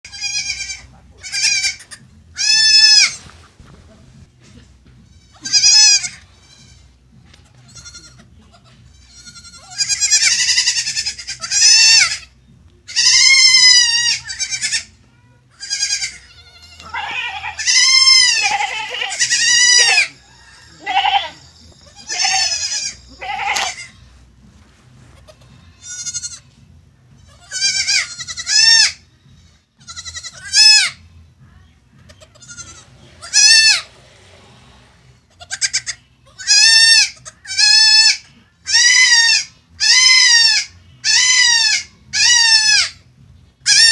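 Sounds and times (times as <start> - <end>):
faint low hum: 0.1 - 43.8
high-pitched animal calls: 35.4 - 43.0.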